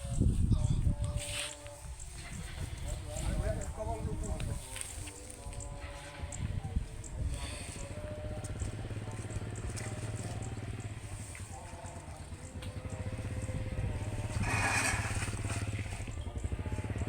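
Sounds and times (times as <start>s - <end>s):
combine harvester engine running: 0.0s - 17.0s
loud rasping noise: 12.8s - 16.1s.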